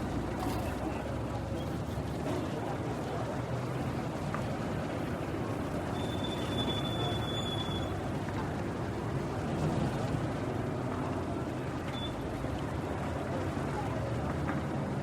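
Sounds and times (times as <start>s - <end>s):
street traffic rumble: 0.0s - 15.0s.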